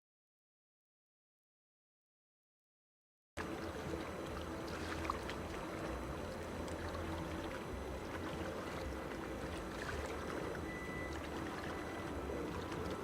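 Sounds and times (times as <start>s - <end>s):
even wash of noise: 3.4s - 13.0s.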